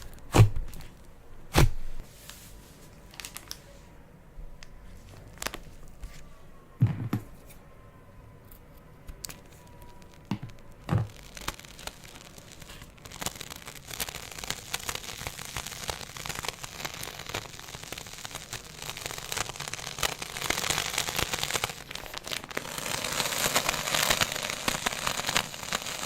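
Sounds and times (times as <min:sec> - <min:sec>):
slime squishing with sticky pops: 0:00.0 - 0:01.9, 0:09.0 - 0:26.0.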